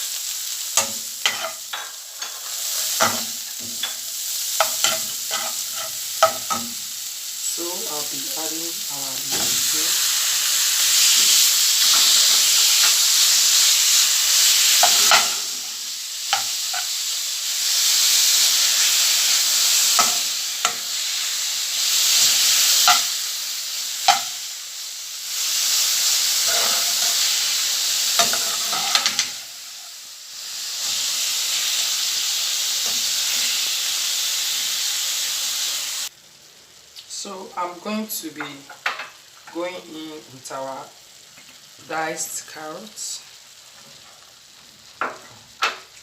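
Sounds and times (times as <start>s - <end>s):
meat sizzling in oil: 0.0s - 46.0s
utensil clicking on pan: 0.8s - 2.4s, 3.0s - 6.8s, 14.7s - 15.5s, 19.9s - 20.9s, 22.8s - 23.1s, 24.0s - 24.4s.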